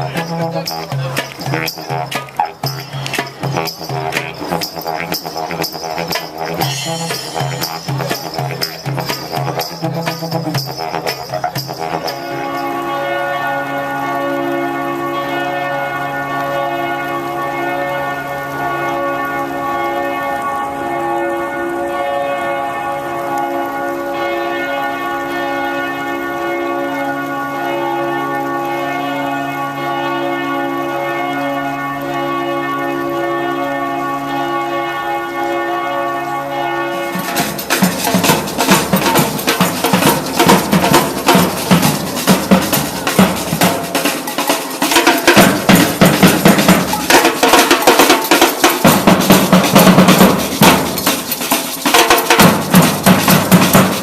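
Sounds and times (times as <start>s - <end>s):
drums beating fast rhythm: 0.0s - 13.0s, 37.0s - 54.0s
bells ringing: 0.0s - 54.0s.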